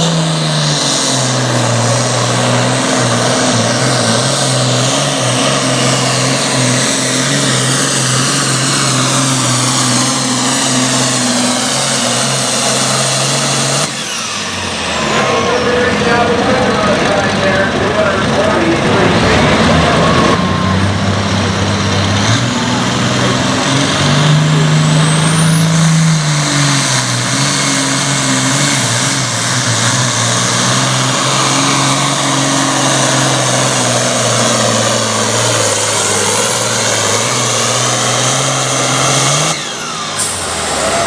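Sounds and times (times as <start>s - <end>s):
tractor diesel engine under load: 0.0s - 41.0s.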